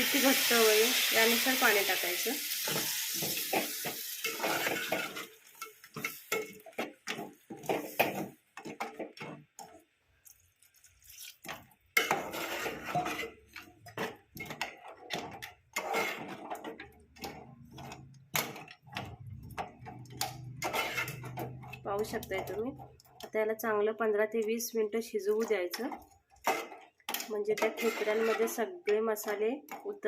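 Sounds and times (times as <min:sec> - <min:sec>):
spoon scraping cooking pan: 0:00.9 - 0:23.4, 0:25.3 - 0:30.0.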